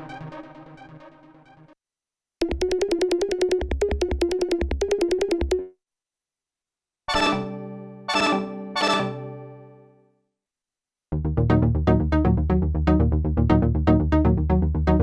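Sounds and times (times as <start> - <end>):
fast repeated synth notes: 2.4 - 5.6
pulsing synth bass: 11.2 - 15.0.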